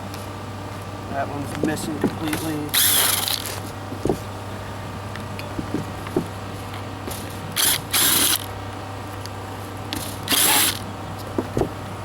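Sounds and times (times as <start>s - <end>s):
ratchet wrench clicking: 2.7s - 3.5s, 7.6s - 8.5s, 10.3s - 10.8s.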